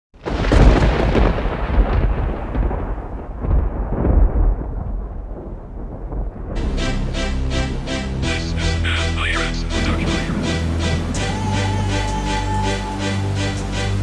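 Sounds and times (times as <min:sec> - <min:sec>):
thunderclap rumbling: 0:00.2 - 0:07.1.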